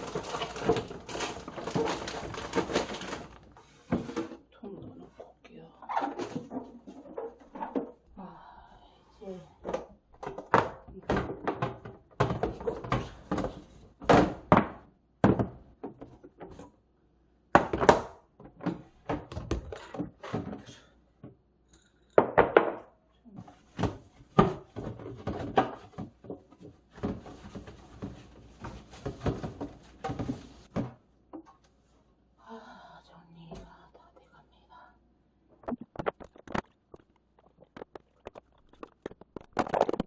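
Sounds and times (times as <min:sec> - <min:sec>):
rustling and clatter: 0:00.0 - 0:04.4, 0:23.4 - 0:32.0.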